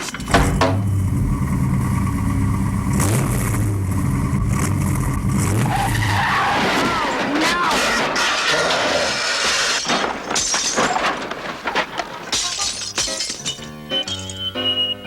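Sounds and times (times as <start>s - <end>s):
cartoon car engine revving: 0.0s - 9.7s.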